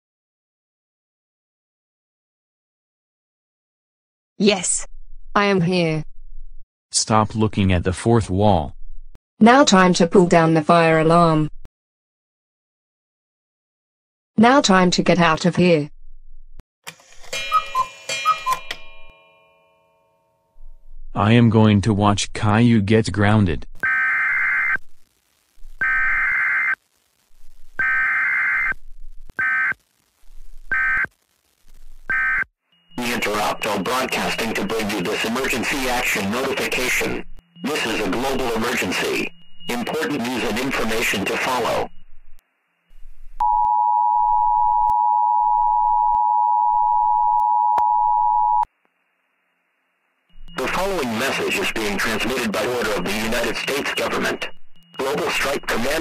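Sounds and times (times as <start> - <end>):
buzzing two-tone data bursts: 23.8 - 27.0, 27.8 - 28.8, 29.4 - 42.0, 50.4 - 56.0.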